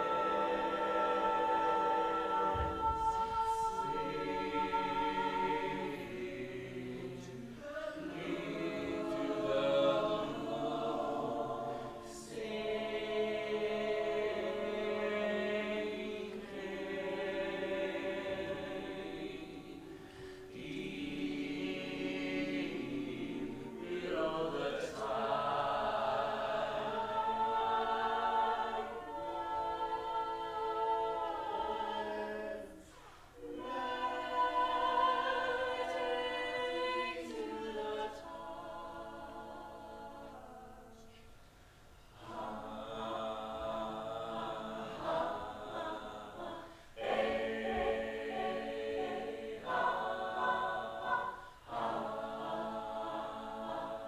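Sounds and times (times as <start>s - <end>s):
choir singing sustained chords: 0.0s - 54.0s.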